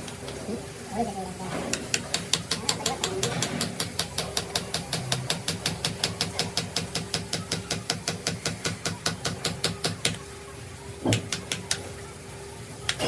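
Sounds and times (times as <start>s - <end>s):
rapid tapping: 1.7s - 10.2s.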